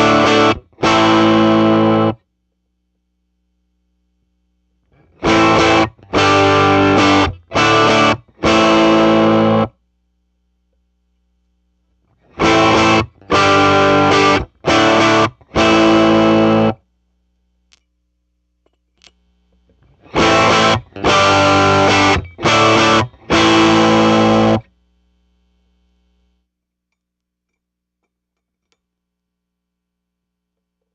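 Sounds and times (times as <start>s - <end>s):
electric guitar chords: 0.0s - 2.2s, 5.0s - 9.8s, 12.2s - 16.8s, 19.8s - 24.7s
faint amplifier hum: 0.0s - 30.9s.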